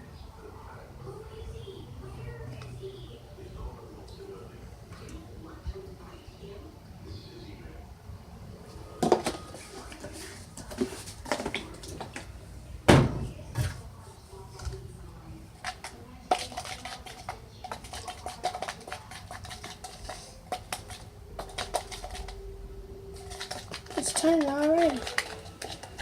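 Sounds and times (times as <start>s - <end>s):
utensil scraping a mixing bowl: 15.5s - 22.4s, 23.2s - 26.0s.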